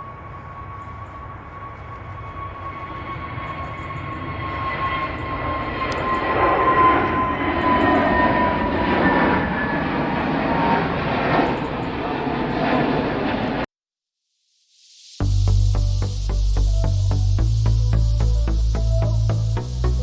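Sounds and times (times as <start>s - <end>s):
jet engines roaring: 0.0s - 13.7s
high engine whine dropping in pitch: 15.2s - 20.0s.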